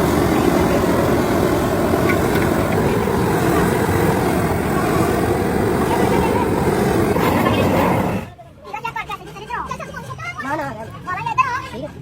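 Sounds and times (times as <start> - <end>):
heavy factory machinery drone: 0.0 - 8.3.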